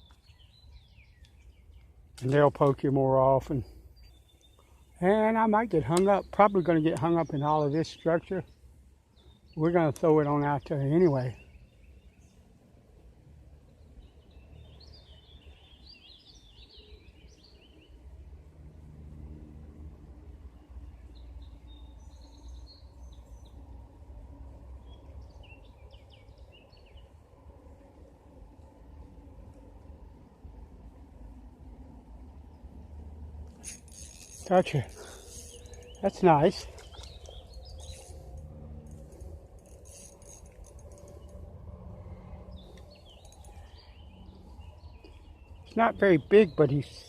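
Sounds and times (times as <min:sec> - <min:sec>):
songbirds chirping: 0:00.0 - 0:47.0
low outdoor rumble: 0:23.6 - 0:47.0.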